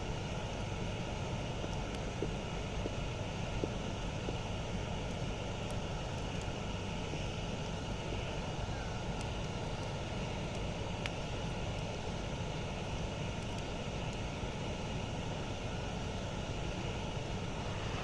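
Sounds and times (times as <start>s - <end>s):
campfire low rumble: 0.0s - 18.0s
wood crackling and popping: 1.5s - 15.1s.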